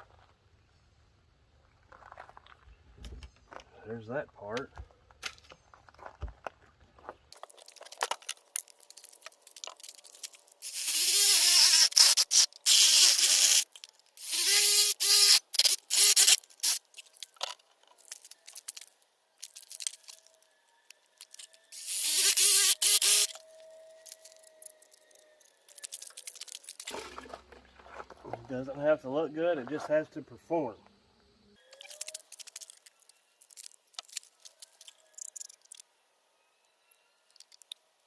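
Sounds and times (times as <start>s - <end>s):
power tool cutting: 10.6s - 16.8s, 21.7s - 23.5s.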